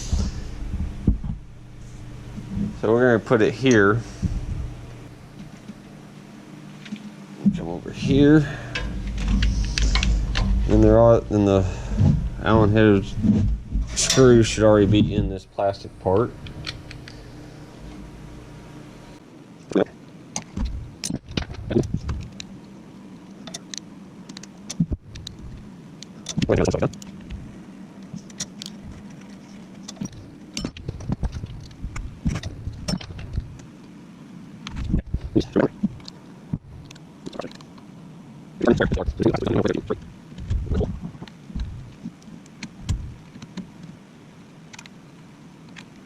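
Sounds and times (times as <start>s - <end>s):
faint steady hum: 0.0s - 46.0s
small parts clicking and knocking: 28.0s - 33.7s.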